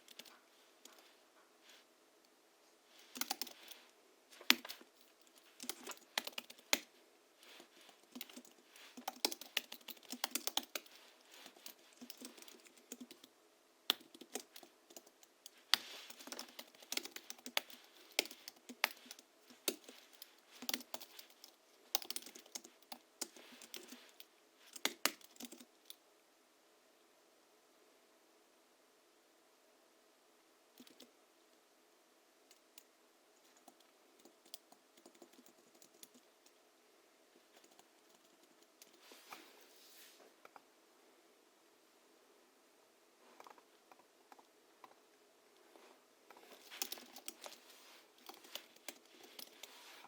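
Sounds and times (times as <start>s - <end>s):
keyboard typing: 0.0s - 1.0s, 3.0s - 3.8s, 4.4s - 13.3s, 13.9s - 26.0s, 30.8s - 31.1s, 32.5s - 36.6s, 37.5s - 39.0s, 46.4s - 47.6s, 48.2s - 49.8s.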